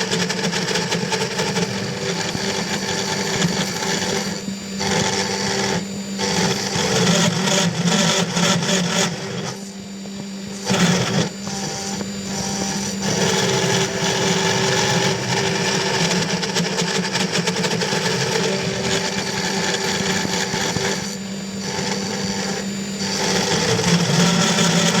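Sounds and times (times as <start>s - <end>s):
router spindle whining: 0.0s - 25.0s
end mill cutting aluminium: 10.5s - 25.0s.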